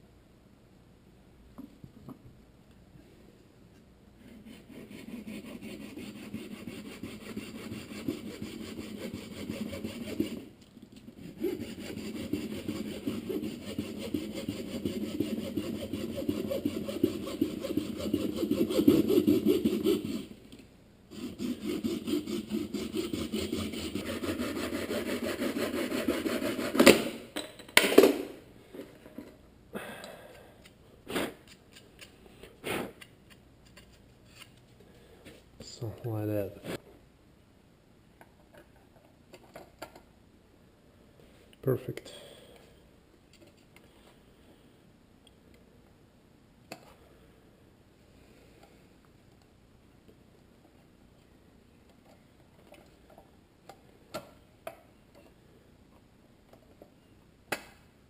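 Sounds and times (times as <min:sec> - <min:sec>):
hand tool rubbing plastic: 0:04.2 - 0:20.4, 0:21.1 - 0:26.9.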